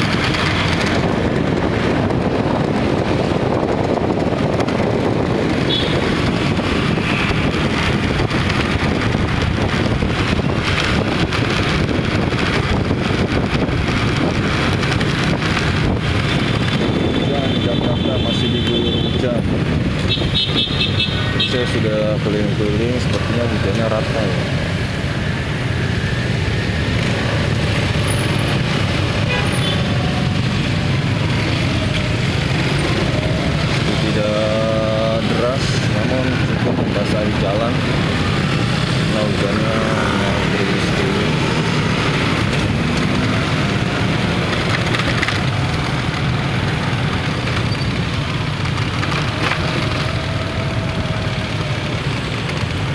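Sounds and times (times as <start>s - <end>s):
wind buffeting microphone: 0.0s - 18.2s, 19.2s - 20.5s
road and traffic noise: 0.0s - 52.9s.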